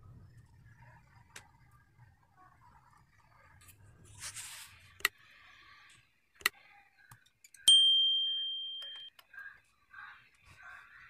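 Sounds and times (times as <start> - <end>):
small metal object ringing: 7.6 - 9.1.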